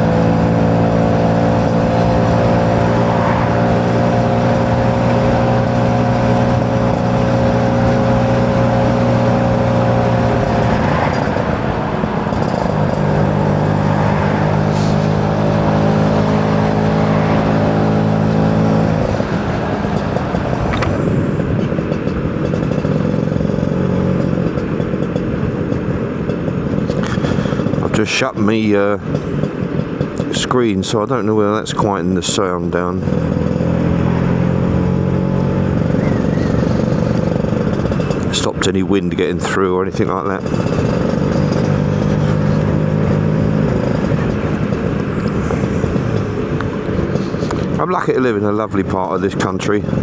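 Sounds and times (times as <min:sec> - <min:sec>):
two-stroke scooter engine: 0:00.0 - 0:50.0
wind noise: 0:01.5 - 0:22.9.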